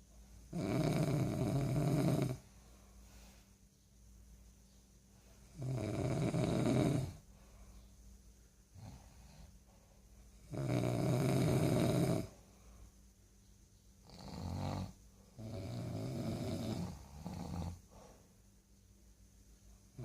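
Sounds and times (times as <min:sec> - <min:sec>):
person snoring: 0:00.5 - 0:02.5, 0:05.5 - 0:07.2, 0:10.4 - 0:12.4, 0:14.0 - 0:17.9.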